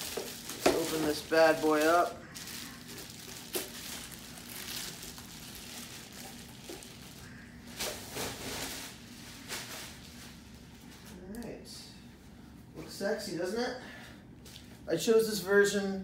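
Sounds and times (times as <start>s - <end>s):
packaging rustling: 0.0s - 11.1s.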